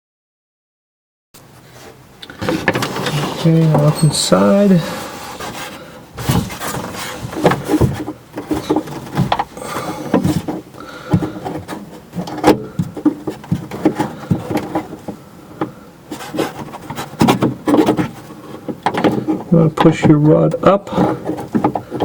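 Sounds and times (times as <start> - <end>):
metal parts rubbing: 2.3 - 10.7, 16.1 - 19.5
clicks and taps inside car door: 7.3 - 15.8.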